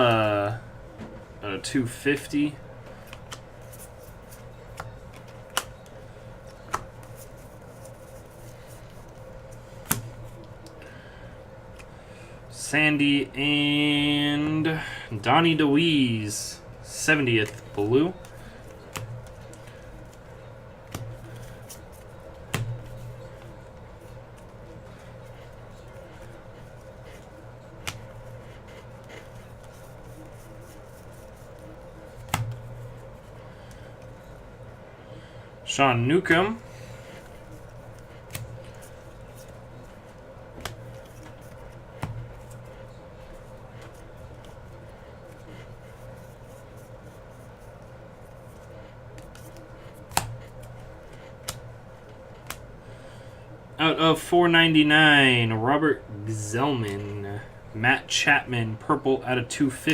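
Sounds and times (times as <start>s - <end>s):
steady low hum: 0.0s - 59.9s
trading cards being handled: 2.9s - 10.8s, 16.9s - 34.5s, 36.1s - 53.2s
sharp taps of cards set down: 32.2s - 32.7s.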